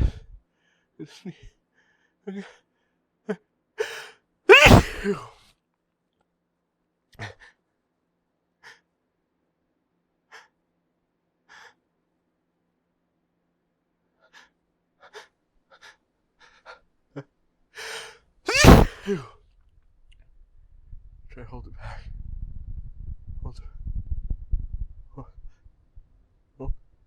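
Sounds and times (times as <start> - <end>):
person inhaling before sneeze: 3.8 - 5.2, 17.8 - 19.2
loud sneeze: 3.8 - 5.3, 17.8 - 19.3.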